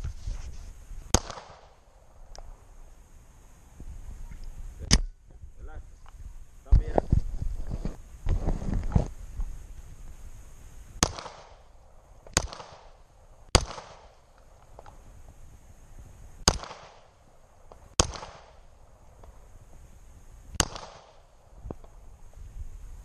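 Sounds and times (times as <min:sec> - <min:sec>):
pistol shots with echo: 0:01.1 - 0:01.8, 0:11.0 - 0:11.7, 0:12.3 - 0:14.2, 0:16.4 - 0:17.2, 0:17.9 - 0:18.7, 0:20.6 - 0:21.4.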